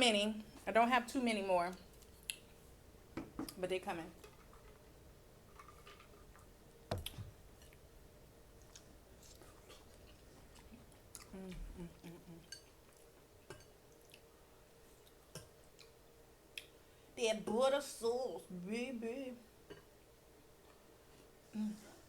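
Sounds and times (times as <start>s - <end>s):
person chewing food: 1.9s - 2.6s, 5.5s - 7.9s, 8.5s - 16.8s.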